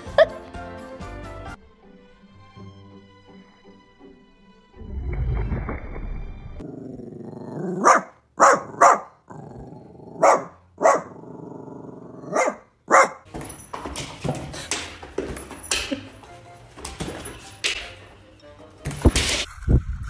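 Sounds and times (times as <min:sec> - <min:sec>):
dog barking: 0:07.7 - 0:09.2, 0:10.1 - 0:11.2, 0:12.2 - 0:13.3.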